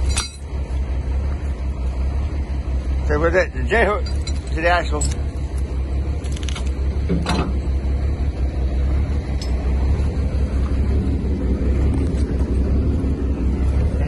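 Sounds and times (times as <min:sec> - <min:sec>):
short metallic clinks: 0:00.0 - 0:00.5, 0:03.8 - 0:05.4, 0:09.3 - 0:09.8
truck engine idling: 0:00.0 - 0:14.0.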